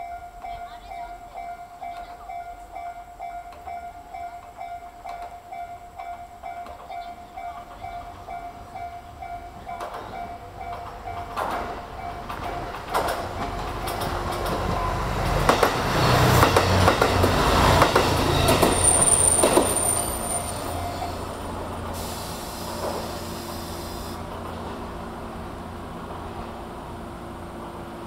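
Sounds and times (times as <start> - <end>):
train wheels knocking over rail joints: 9.7 - 19.9
high wheel squeal: 18.1 - 21.4.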